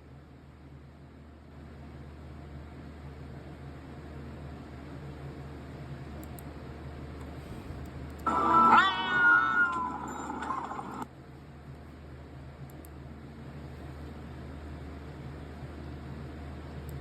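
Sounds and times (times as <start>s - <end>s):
high-pitched cartoon animal cry: 8.3s - 10.2s.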